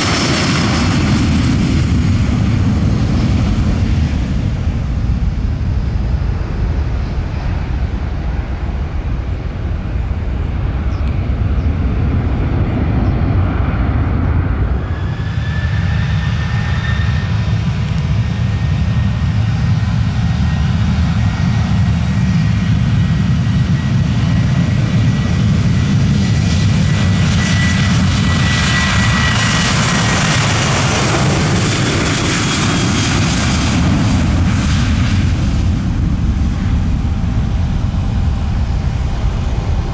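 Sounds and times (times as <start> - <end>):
jet engine fan whine: 0.0 - 39.9
jet engines at takeoff: 0.0 - 39.9.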